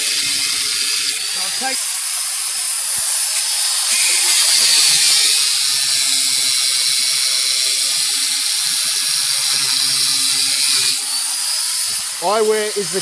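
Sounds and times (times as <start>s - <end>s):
angle grinder cutting steel: 0.0s - 13.0s.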